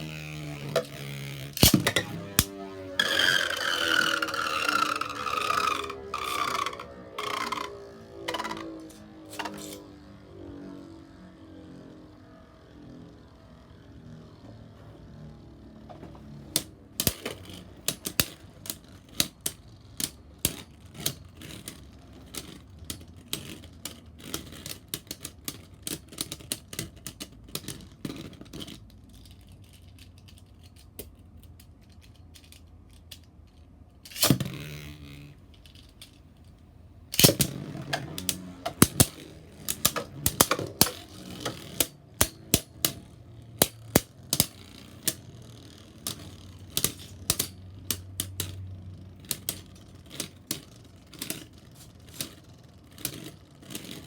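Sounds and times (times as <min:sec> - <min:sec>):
spinning tops clacking: 0:01.6 - 0:09.9, 0:37.2 - 0:48.7.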